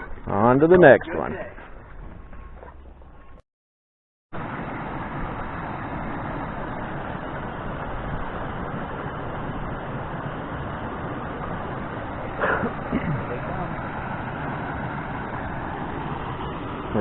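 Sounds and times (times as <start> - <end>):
road and engine noise in vehicle: 4.4 - 17.0.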